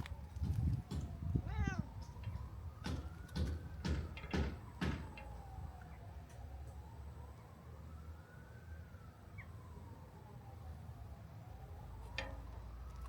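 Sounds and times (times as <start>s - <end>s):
cat meowing: 1.4s - 1.9s.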